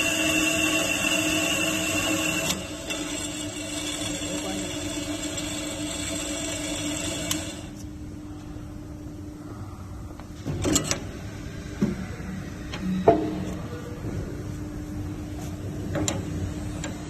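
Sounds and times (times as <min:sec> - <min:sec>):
band saw humming and whining: 0:00.0 - 0:07.8.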